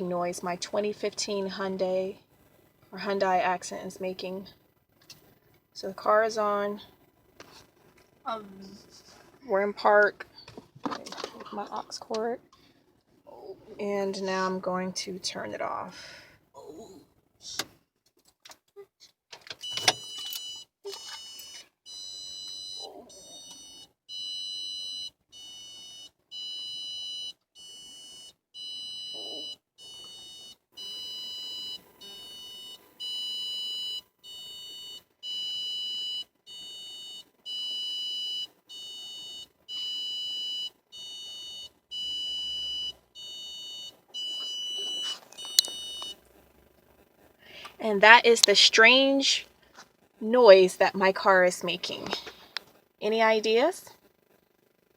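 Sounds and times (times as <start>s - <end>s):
high-pitched electronic warning beeps: 19.7s - 46.2s.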